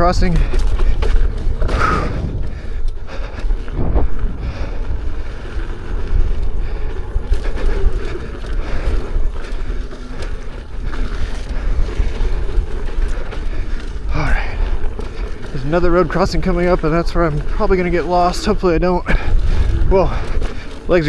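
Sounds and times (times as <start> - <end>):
knocks from bumps: 0.0 - 4.6
electric unicycle rumble: 0.0 - 21.0
wind buffeting microphone: 0.0 - 21.0.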